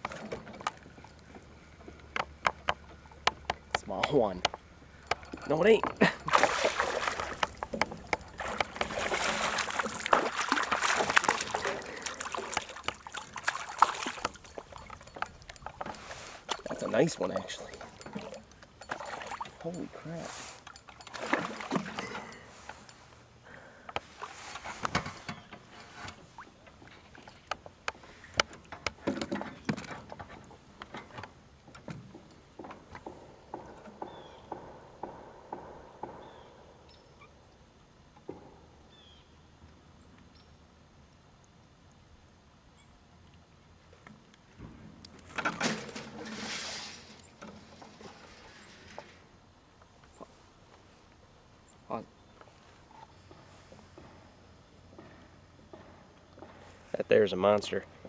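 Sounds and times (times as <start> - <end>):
clicks and knocks in a boat: 0.0 - 20.0, 23.8 - 36.6, 38.1 - 39.2, 43.2 - 46.4, 47.0 - 50.3
water splashing and sloshing: 0.0 - 23.4, 24.0 - 34.6, 43.1 - 51.1
fish thrashing at surface: 6.2 - 15.2, 20.9 - 22.4.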